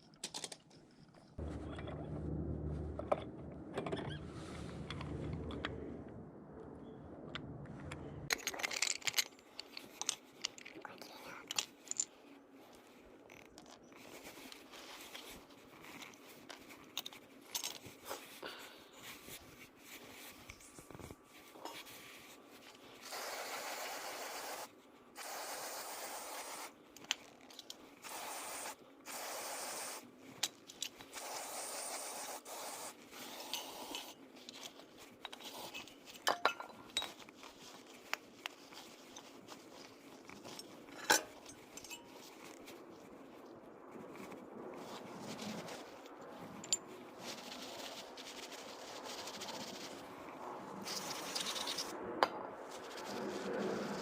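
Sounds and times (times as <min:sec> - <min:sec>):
metal parts scraping and clinking: 0:08.3 - 0:18.4, 0:33.1 - 0:42.7, 0:46.0 - 0:47.9.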